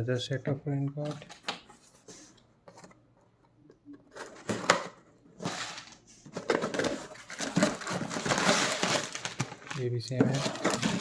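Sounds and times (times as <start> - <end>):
cardboard and plastic rustling: 3.9 - 11.0.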